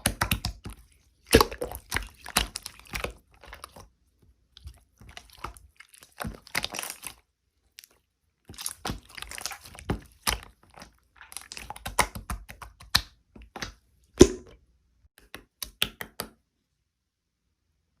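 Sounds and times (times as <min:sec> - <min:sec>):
crackling and crunching: 0:00.0 - 0:13.0.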